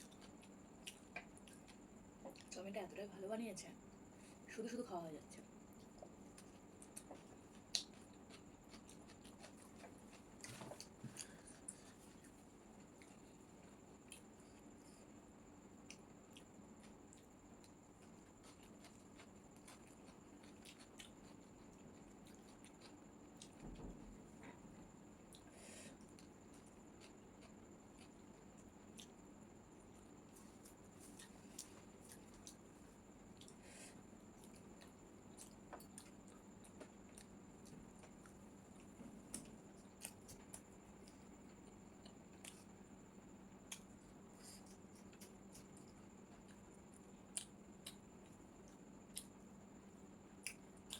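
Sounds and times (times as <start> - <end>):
person chewing: 0.0 - 1.8, 5.8 - 15.1, 15.9 - 23.6, 25.3 - 29.2, 30.4 - 32.7, 34.3 - 42.7, 43.6 - 48.4, 50.4 - 50.9
low background hum: 0.0 - 50.9.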